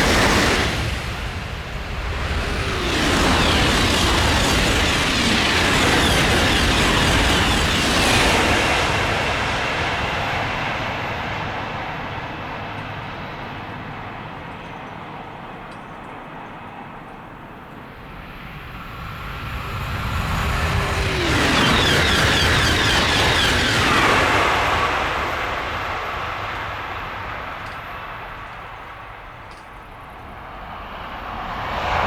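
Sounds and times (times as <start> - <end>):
high-speed train passing: 0.0 - 32.0.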